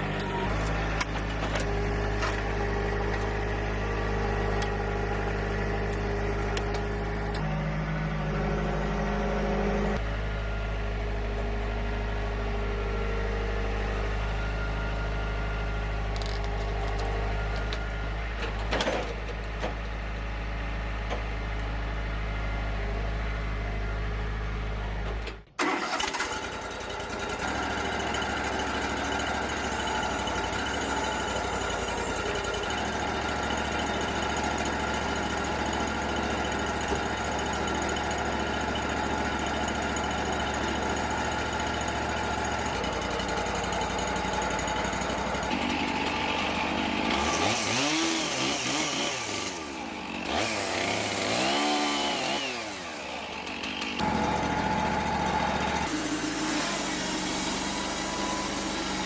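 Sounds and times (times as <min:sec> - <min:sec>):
sawmill engine running: 0:00.0 - 0:59.0
high busy machine sound: 0:44.4 - 0:59.0.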